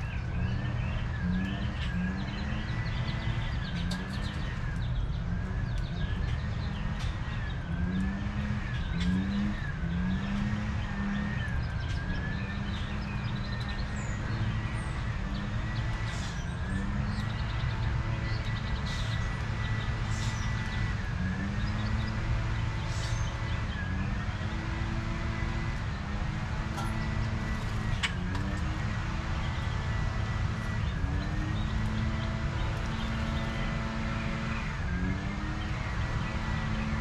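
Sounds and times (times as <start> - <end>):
high bird chirps: 0.0 - 37.0
low mechanical hum with whine: 0.0 - 37.0.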